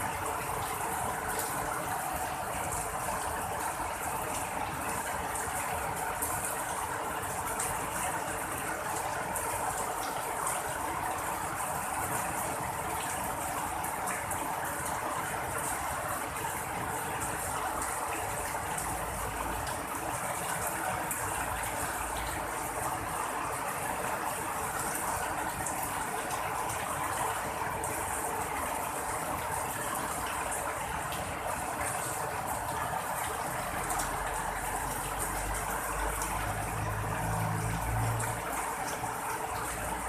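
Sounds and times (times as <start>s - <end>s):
steady rain falling: 0.0s - 40.0s.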